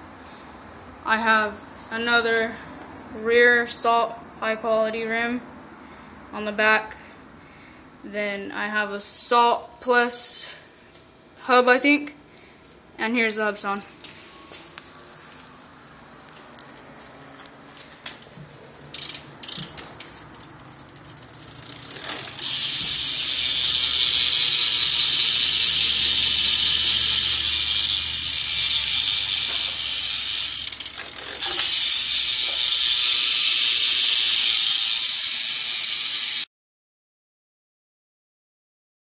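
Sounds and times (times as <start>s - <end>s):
bicycle hub ratcheting buzz: 18.8s - 36.5s.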